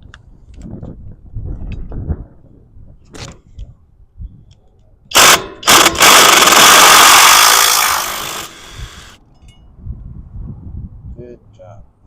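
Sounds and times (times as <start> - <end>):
impact wrench undoing a bolt: 5.1 - 9.2.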